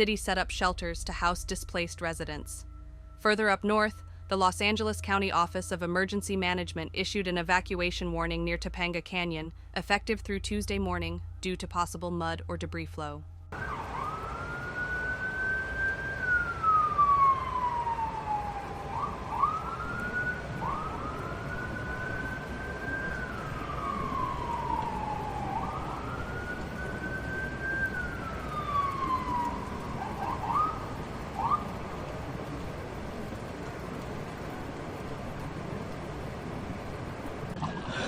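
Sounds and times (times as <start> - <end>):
siren wailing: 0.0 - 6.2, 13.5 - 35.1
low rumble: 0.0 - 14.6
siren whoops: 13.5 - 32.0.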